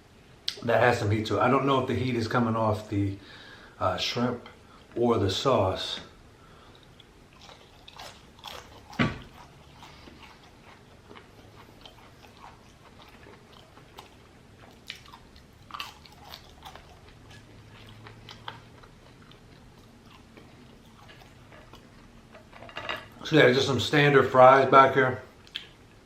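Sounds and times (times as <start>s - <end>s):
person chewing: 6.7s - 23.2s, 25.4s - 25.8s
crunching fried food: 6.8s - 23.4s.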